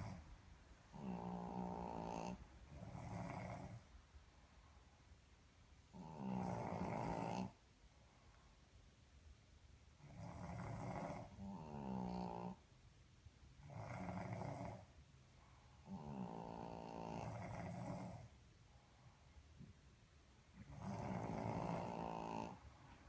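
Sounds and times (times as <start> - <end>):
dog snoring: 0.0 - 0.2, 0.9 - 3.9, 5.9 - 7.6, 10.0 - 12.6, 13.6 - 14.9, 15.8 - 18.3, 20.6 - 22.6
man snoring: 1.0 - 3.8, 6.0 - 7.5, 10.1 - 12.6, 13.7 - 14.8, 15.9 - 18.2, 20.7 - 22.6.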